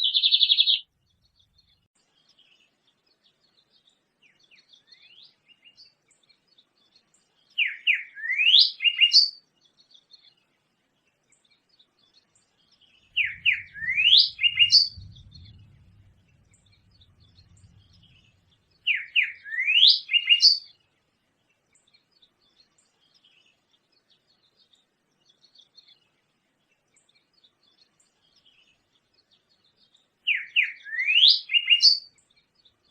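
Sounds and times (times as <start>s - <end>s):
songbird singing: 0.0s - 32.9s
faint low rumble: 13.1s - 18.9s.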